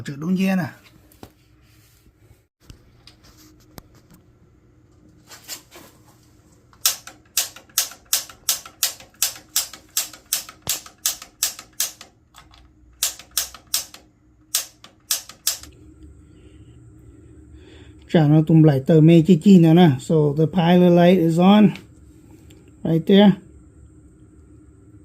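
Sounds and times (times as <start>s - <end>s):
piezo igniter clicking: 6.8s - 16.1s.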